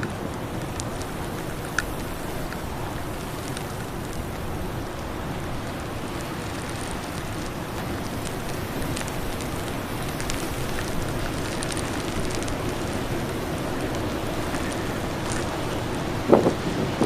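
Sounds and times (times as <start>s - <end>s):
faint ticks: 0.0s - 16.6s
blizzard wind and driven snow: 0.0s - 17.0s.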